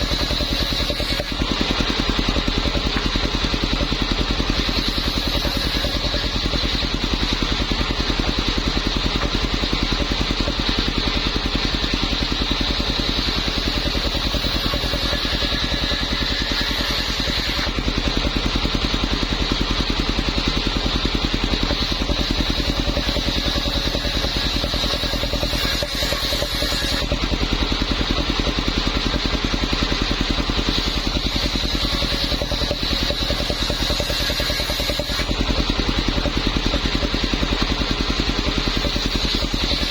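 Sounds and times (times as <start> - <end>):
circular saw engine pulsing: 0.0 - 39.9
saw blade whine: 0.0 - 39.9.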